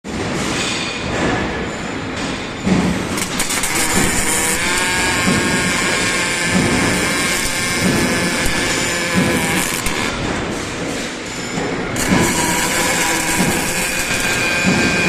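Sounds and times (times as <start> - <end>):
rough noisy machine: 2.6 - 15.0.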